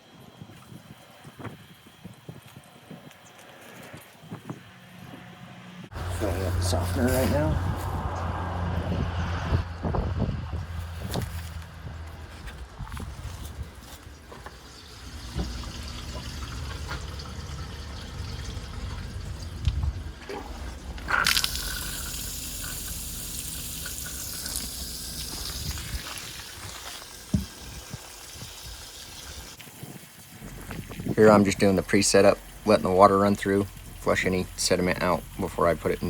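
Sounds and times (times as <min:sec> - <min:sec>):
water rushing into a tank: 0:14.2 - 0:36.0.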